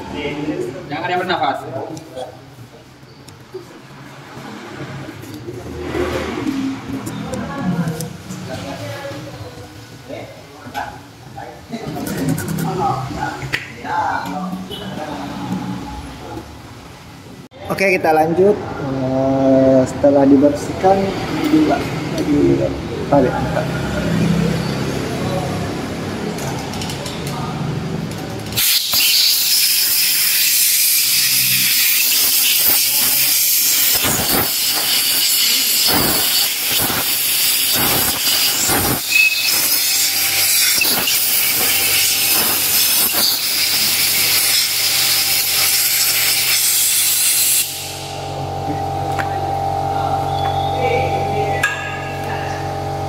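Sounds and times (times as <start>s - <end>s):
jet sputtering: 11.8s - 13.3s, 28.5s - 48.1s
pressurised jet hissing: 28.6s - 48.1s.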